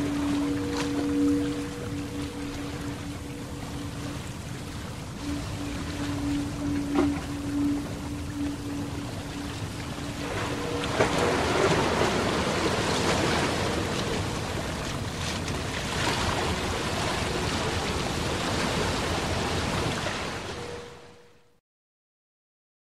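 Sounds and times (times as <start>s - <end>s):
water rushing: 0.0s - 21.1s
wind: 0.0s - 21.4s
faint hum: 0.0s - 21.5s.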